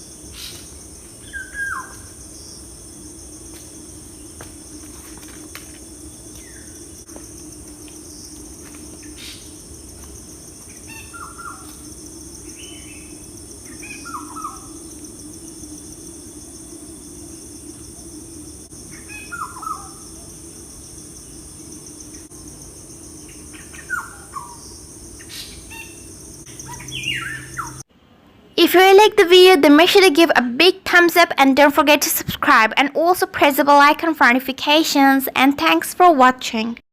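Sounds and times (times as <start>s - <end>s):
insect buzz: 0.0s - 27.9s
birds chirping: 10.7s - 14.8s, 23.3s - 27.8s.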